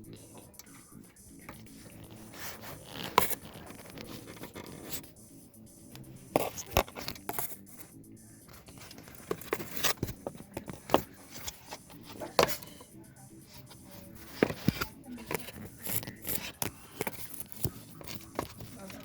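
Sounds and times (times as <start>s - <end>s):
hands handling small parts: 6.0s - 7.8s, 8.5s - 12.9s, 13.5s - 19.0s.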